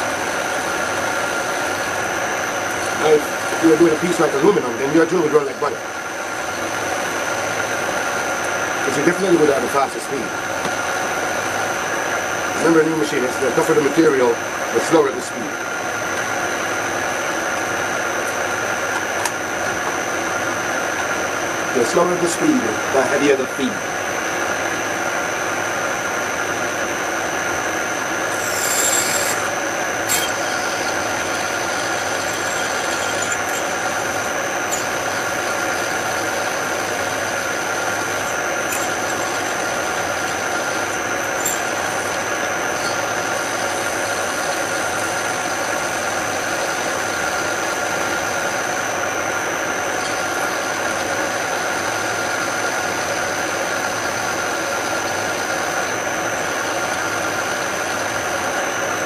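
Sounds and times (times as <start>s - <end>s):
drill cutting into steel: 28.2s - 44.0s.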